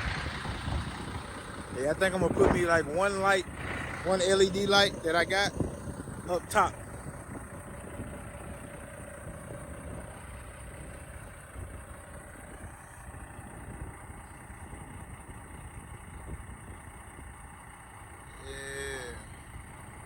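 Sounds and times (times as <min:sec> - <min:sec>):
wind buffeting microphone: 0:00.0 - 0:17.4
diesel truck engine idling: 0:00.0 - 0:20.0.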